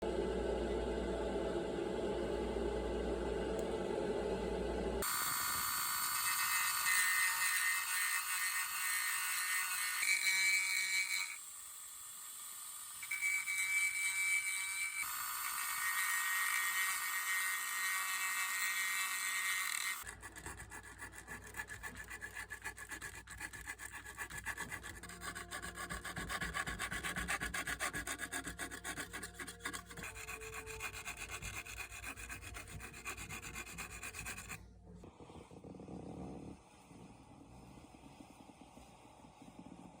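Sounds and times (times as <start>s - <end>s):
low hum: 0.0s - 5.0s.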